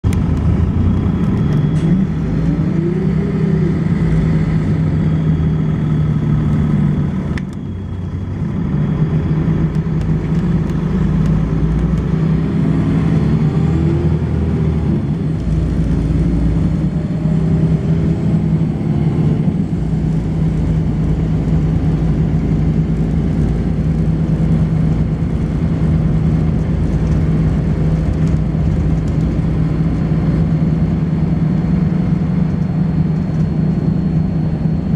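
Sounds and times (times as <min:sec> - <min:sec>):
bus diesel engine running: 0:00.0 - 0:34.9
high-pitched whine: 0:00.1 - 0:22.6.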